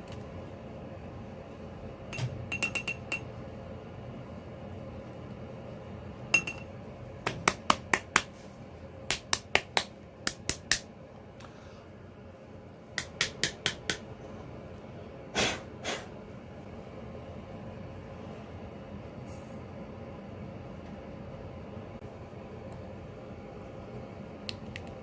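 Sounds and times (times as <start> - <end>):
hammer tapping on metal: 13.0 - 14.0.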